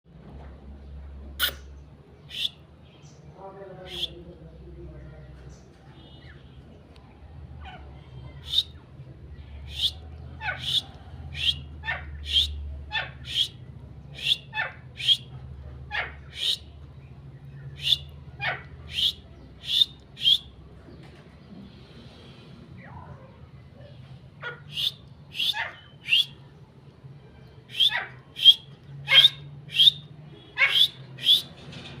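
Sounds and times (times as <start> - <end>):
francolins calling: 1.4 - 2.6, 3.8 - 4.2, 7.7 - 8.8, 9.6 - 20.6, 24.4 - 26.5, 27.6 - 31.6.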